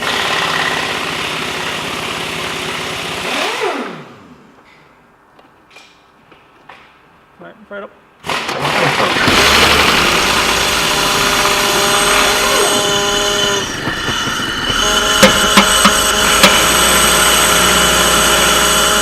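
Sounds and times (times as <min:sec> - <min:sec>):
car engine running: 0:08.8 - 0:19.0.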